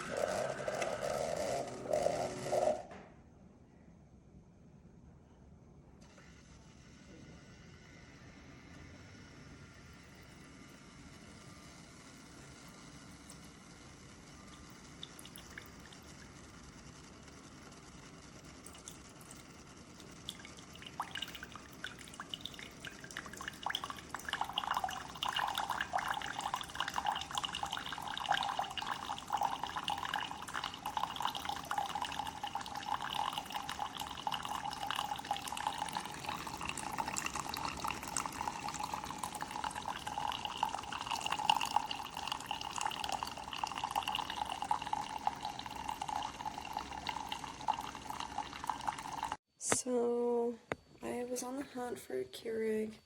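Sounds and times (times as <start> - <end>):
coffee trickling into mug: 14.2 - 16.4, 18.4 - 49.4.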